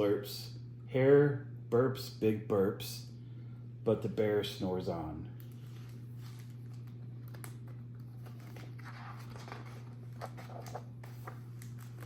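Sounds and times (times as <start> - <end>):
steady low hum: 0.0 - 12.0
paper pages rustling: 5.4 - 12.0.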